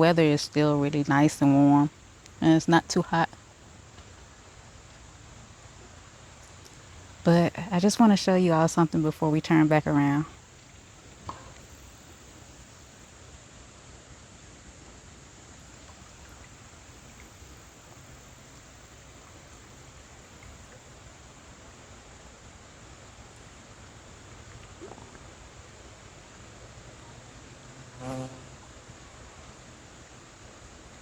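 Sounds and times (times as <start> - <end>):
outdoor background hiss: 0.0 - 31.0
fly buzzing: 10.3 - 13.1, 15.6 - 21.5, 27.8 - 28.8.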